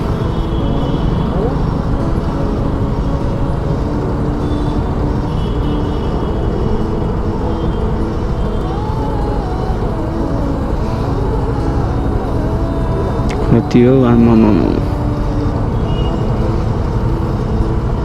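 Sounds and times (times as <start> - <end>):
traffic noise: 0.0 - 18.0
wavering siren tone: 0.0 - 18.0
vehicle horn tones: 13.4 - 17.0.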